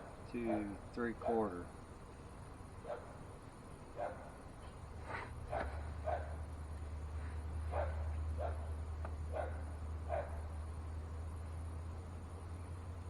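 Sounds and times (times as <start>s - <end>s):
low hum: 0.0s - 13.0s
dog barking: 2.8s - 3.2s, 4.0s - 4.4s, 5.5s - 6.4s, 7.7s - 10.5s.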